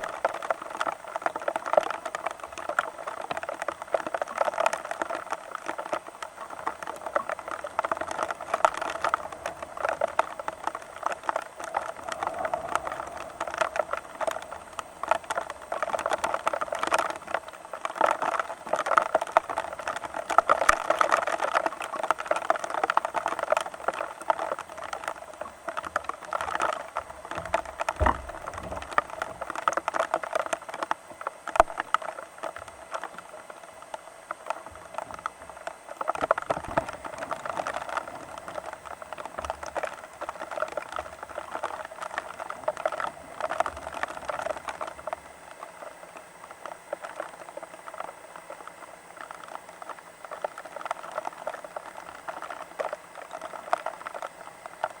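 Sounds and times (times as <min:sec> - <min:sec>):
rain pattering: 0:00.0 - 0:55.0
low rumble: 0:09.0 - 0:16.7.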